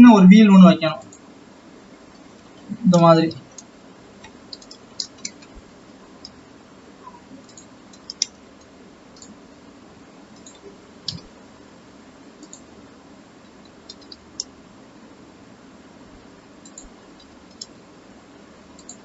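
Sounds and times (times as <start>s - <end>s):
faint steady hum: 0.0s - 19.0s
mouse and keyboard clicks: 3.6s - 5.6s, 7.1s - 9.4s, 13.9s - 14.5s.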